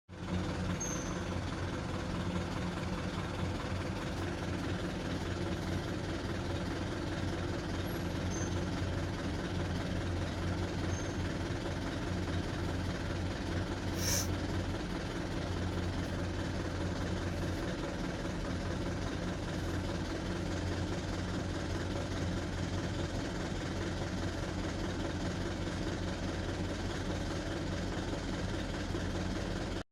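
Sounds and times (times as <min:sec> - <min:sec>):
truck engine under load: 0:00.1 - 0:29.8
brief high hiss: 0:13.9 - 0:14.4.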